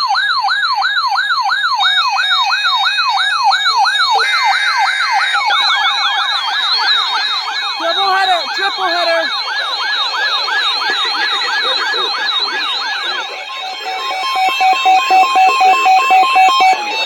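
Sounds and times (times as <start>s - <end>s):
electronic yelp siren: 0.0s - 17.0s
faster yelp siren: 0.0s - 17.0s.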